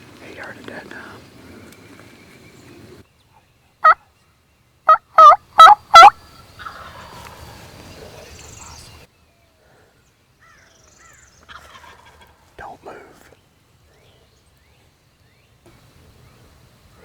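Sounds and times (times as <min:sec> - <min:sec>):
turkey yelps: 0:04.9 - 0:07.2.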